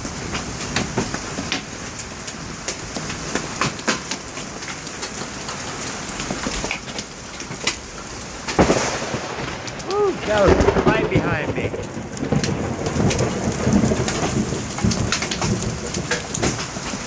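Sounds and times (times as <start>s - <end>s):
hailstones striking: 8.4s - 17.0s
rain hissing: 8.6s - 17.0s.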